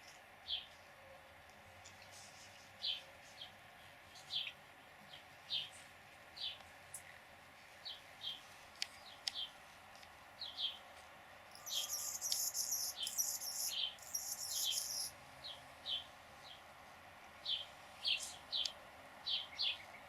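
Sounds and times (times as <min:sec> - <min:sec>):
bird chip notes: 0:11.6 - 0:15.1
buzzy scratchy bird phrase: 0:11.6 - 0:15.1.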